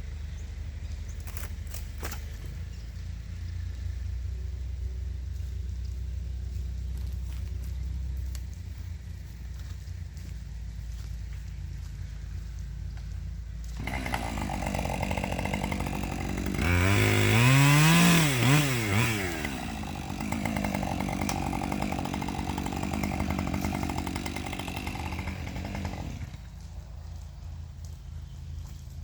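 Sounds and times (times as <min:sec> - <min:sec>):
chainsaw revving: 0:13.6 - 0:26.7.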